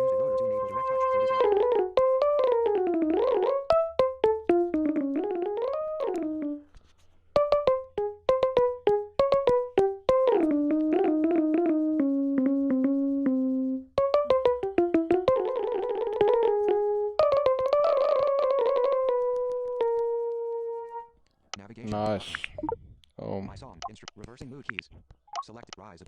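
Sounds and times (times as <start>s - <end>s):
pitch-sliding held tones: 0.0s - 6.7s
synth piano notes: 0.0s - 6.7s, 7.4s - 21.1s.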